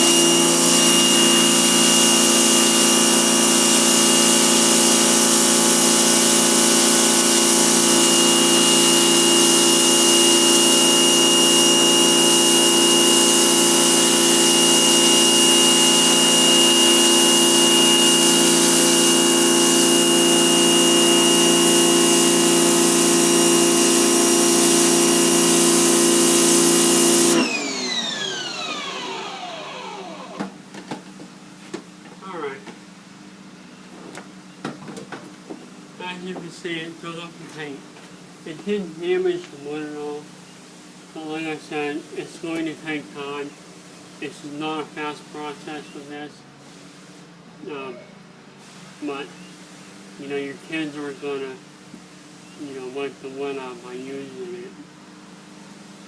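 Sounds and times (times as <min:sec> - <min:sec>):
motor whine spinning down: 0:00.0 - 0:30.6
pressure washer motor humming: 0:00.0 - 0:30.6.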